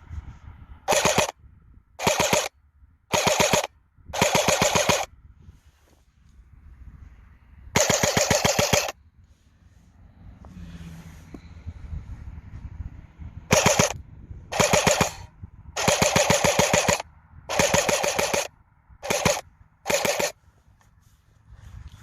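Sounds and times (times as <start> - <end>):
airsoft gun firing bursts: 0.9 - 1.4, 2.0 - 2.5, 3.1 - 5.1, 7.8 - 9.0, 13.5 - 20.4.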